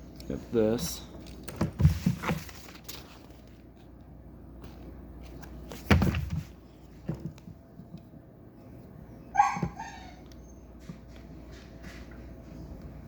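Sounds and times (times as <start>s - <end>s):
dog yelping: 9.2s - 10.7s
dog barking: 9.3s - 10.2s.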